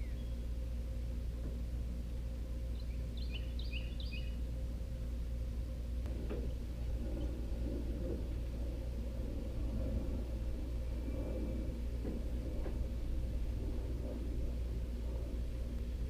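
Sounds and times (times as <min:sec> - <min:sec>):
bird chirps: 0:00.0 - 0:00.4, 0:02.7 - 0:04.4
low hum: 0:00.0 - 0:16.0.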